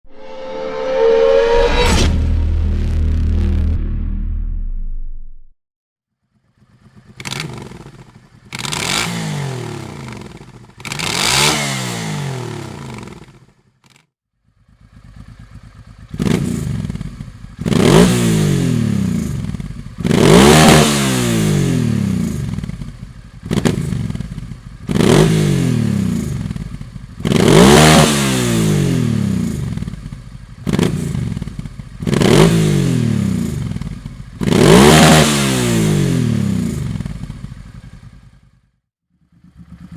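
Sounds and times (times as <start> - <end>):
motorcycle engine revving: 6.2 - 39.9.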